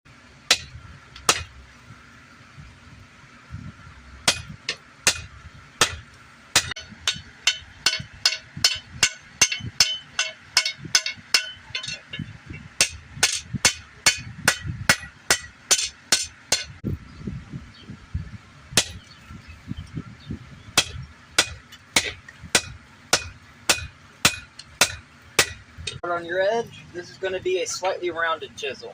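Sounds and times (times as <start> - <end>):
hammer striking steel on anvil: 0.5 - 1.5, 4.2 - 16.8, 18.8 - 19.0, 20.8 - 26.0.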